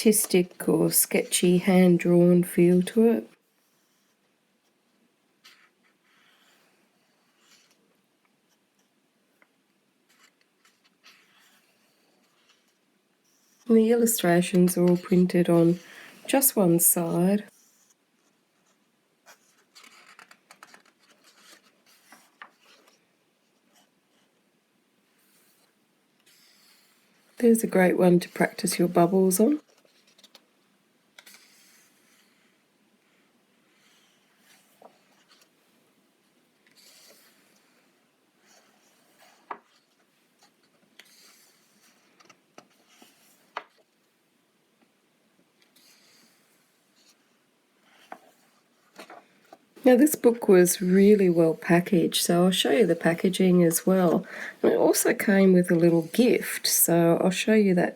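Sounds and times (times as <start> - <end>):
paper pages rustling: 10.1 - 16.4, 17.5 - 24.3, 25.2 - 32.6, 33.8 - 35.6, 36.6 - 44.1, 45.6 - 56.5.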